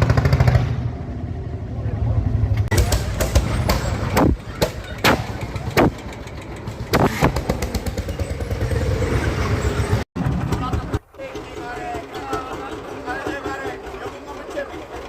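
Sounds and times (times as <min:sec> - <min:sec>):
tractor engine running: 0:02.2 - 0:15.0
sharp exhaust bangs: 0:02.6 - 0:11.7.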